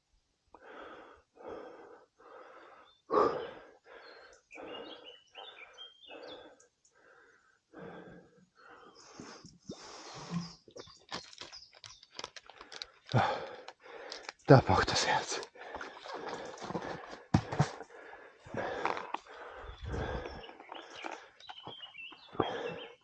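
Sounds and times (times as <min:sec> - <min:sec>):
man breathing hard: 0:00.6 - 0:10.3, 0:12.5 - 0:14.3, 0:15.5 - 0:21.4, 0:22.2 - 0:23.0.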